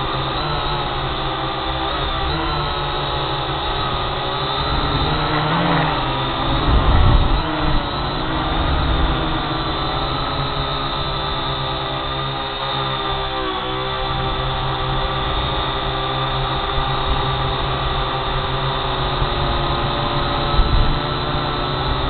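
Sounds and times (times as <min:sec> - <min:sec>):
drone rotors whining: 0:00.0 - 0:22.0
low rumbling surge: 0:04.6 - 0:11.4.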